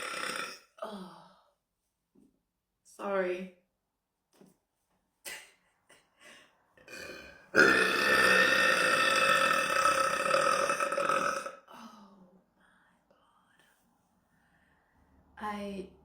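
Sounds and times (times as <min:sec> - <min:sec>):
woman burping: 0:00.0 - 0:01.0, 0:06.9 - 0:11.9.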